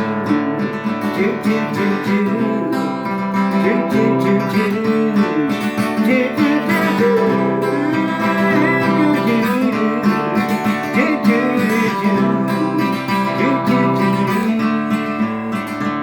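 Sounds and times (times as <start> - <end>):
acoustic guitar strumming: 0.0 - 16.0
wavering melody line: 5.1 - 15.8.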